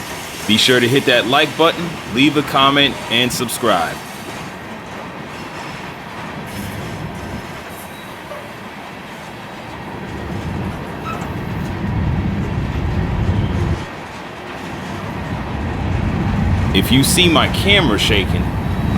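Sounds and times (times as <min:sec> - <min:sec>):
freight train rolling on rails: 0:00.0 - 0:18.9
wind buffeting microphone: 0:09.8 - 0:14.0, 0:14.7 - 0:18.9.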